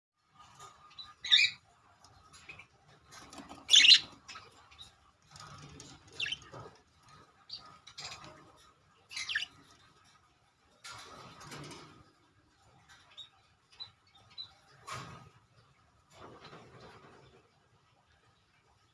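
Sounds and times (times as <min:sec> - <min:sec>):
faint scratching and rustling: 0:00.2 - 0:18.9
budgerigars chirping: 0:00.9 - 0:01.6, 0:03.5 - 0:05.0, 0:06.1 - 0:06.6, 0:09.1 - 0:09.7.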